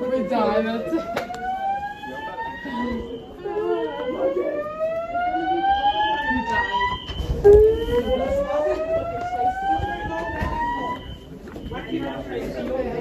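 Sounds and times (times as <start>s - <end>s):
fire alarm whoop tone: 0.0s - 12.3s.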